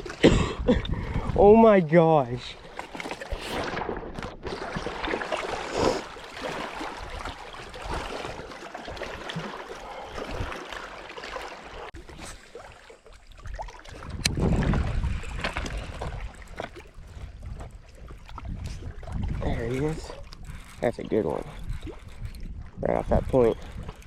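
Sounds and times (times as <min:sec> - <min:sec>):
wind buffeting microphone: 0:00.0 - 0:02.6, 0:13.4 - 0:24.0
water sloshing against hull: 0:00.0 - 0:24.0.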